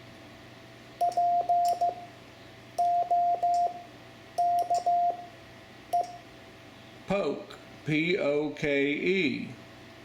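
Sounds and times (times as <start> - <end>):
morse code tone: 1.0 - 2.1, 2.8 - 3.8, 4.4 - 5.3.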